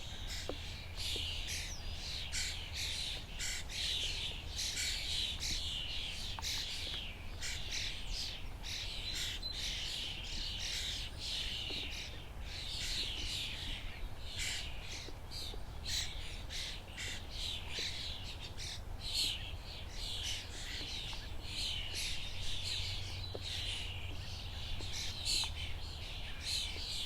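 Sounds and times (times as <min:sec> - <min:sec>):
many birds chirping: 0:00.0 - 0:27.0.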